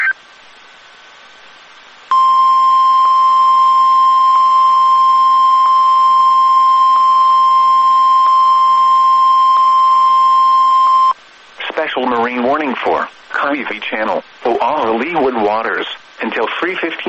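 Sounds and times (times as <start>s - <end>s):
faint radio hiss: 0.0s - 17.0s
high alarm tone: 2.1s - 11.2s.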